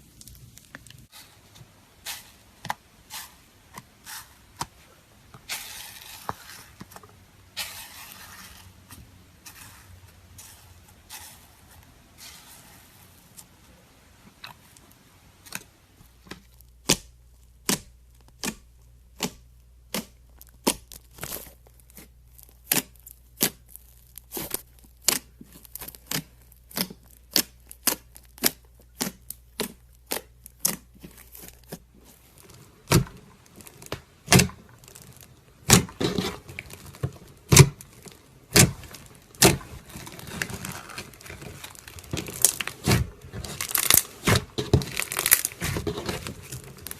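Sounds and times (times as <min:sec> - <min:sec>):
slime squeezed by hand: 0:25.5 - 0:46.9
sharp slime pops: 0:37.5 - 0:37.9, 0:38.5 - 0:40.4.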